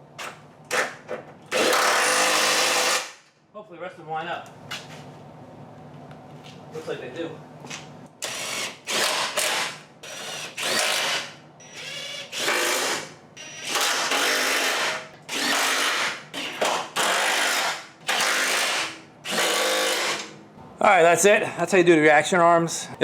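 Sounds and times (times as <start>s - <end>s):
power tool driving bolts: 0.7s - 3.2s, 8.2s - 20.3s.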